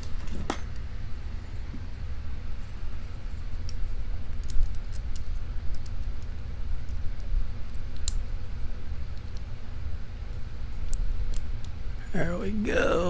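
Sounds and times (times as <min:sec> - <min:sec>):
steady low hum: 0:00.0 - 0:13.0
small metallic clicks of a padlock: 0:03.6 - 0:08.3.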